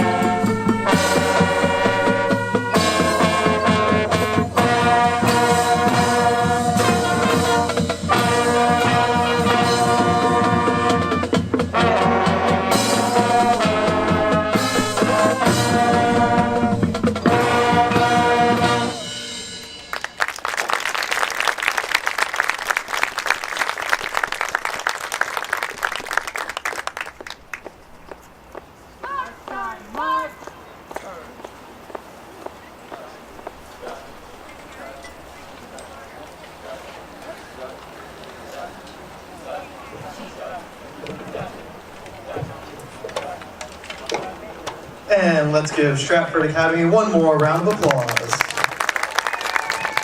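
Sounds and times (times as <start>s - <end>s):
marching band brass and drums: 0.0s - 50.0s
crowd applauding: 19.6s - 28.2s, 47.2s - 50.0s.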